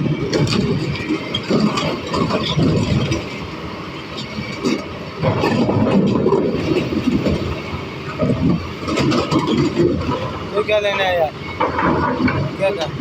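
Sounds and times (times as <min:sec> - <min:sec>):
excavator engine rumbling: 0:00.0 - 0:13.0.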